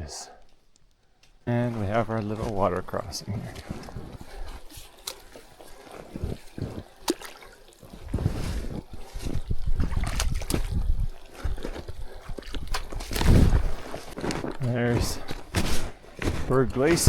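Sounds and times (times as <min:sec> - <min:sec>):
stream trickling and splashing: 0:01.8 - 0:14.2
thumping footfalls: 0:13.0 - 0:17.0.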